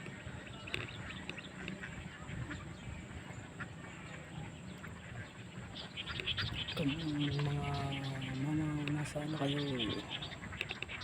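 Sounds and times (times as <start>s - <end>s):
underwater crackle of clicks: 8.7s - 9.2s, 10.5s - 11.0s.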